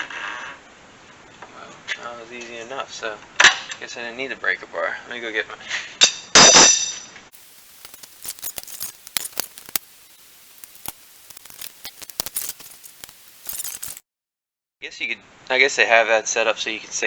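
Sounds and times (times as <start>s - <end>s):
metal tools clicking: 7.4s - 14.0s.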